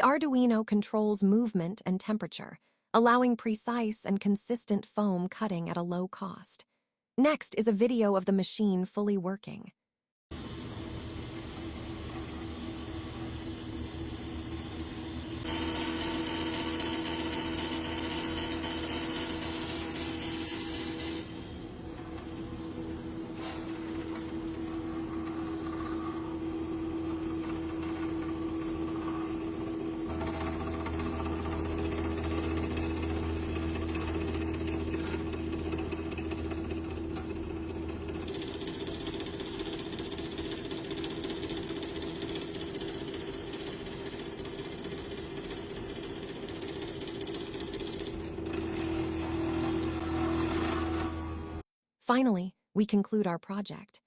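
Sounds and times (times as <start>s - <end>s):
stepper motors whining: 10.3s - 51.6s.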